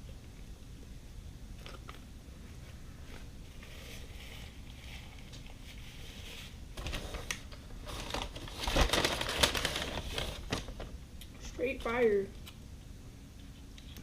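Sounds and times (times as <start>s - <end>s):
food packaging clicking and crinkling: 6.8s - 11.0s.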